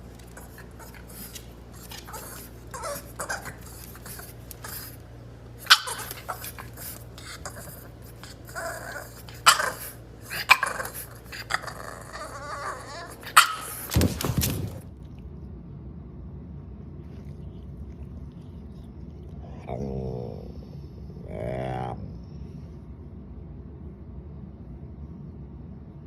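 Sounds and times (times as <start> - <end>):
dog barking and whining: 0.0 - 14.8.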